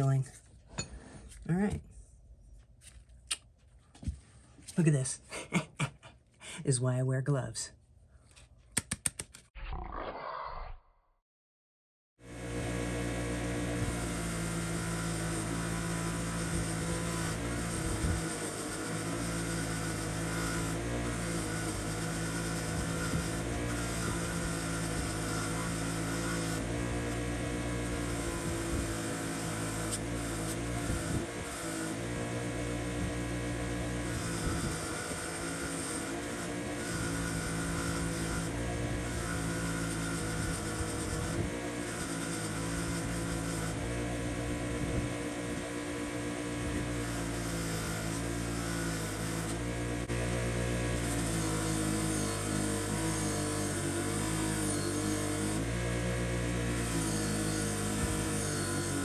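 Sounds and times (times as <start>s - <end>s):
wire wheel motor running: 12.3s - 59.0s.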